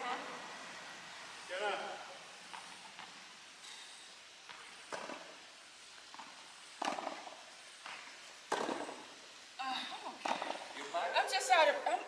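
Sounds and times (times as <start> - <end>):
tennis ball hits and bounces: 6.2 - 7.3, 8.5 - 9.0.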